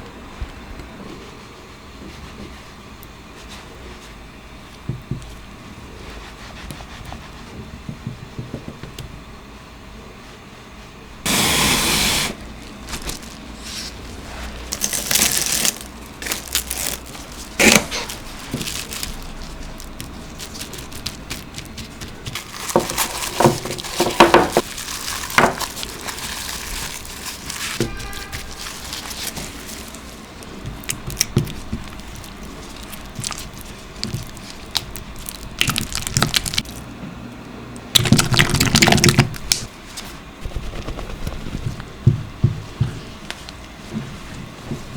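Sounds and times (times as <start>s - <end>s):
crinkling and utensil clicking: 14.6s - 36.9s.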